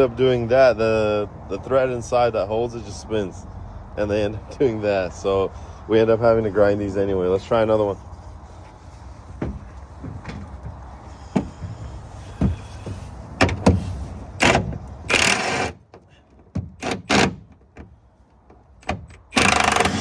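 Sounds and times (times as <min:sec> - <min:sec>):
sharp knocks and clicks: 0:09.3 - 0:20.0
impact wrench running: 0:14.4 - 0:15.8, 0:19.2 - 0:20.0.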